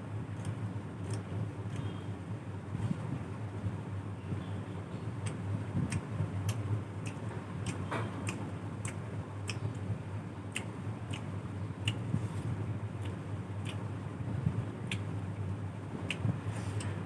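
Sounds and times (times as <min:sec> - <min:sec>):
mouth chewing: 0:05.2 - 0:09.9, 0:10.5 - 0:15.1
lips smacking: 0:13.0 - 0:13.9.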